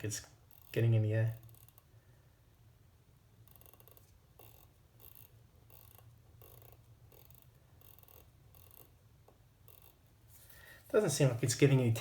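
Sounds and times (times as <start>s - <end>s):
watch ratchet clicking: 0.5s - 1.9s, 3.4s - 9.0s, 9.7s - 10.0s.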